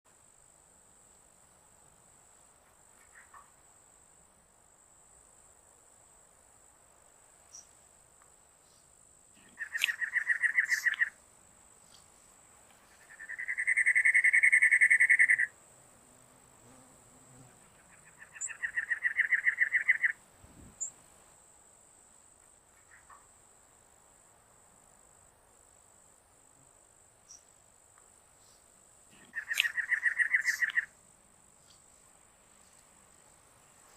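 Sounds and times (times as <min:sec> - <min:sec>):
high insect trill: 0:00.1 - 0:33.9
wren singing harsh repeated notes: 0:09.4 - 0:11.2, 0:12.9 - 0:15.5, 0:17.9 - 0:20.2, 0:28.5 - 0:31.0.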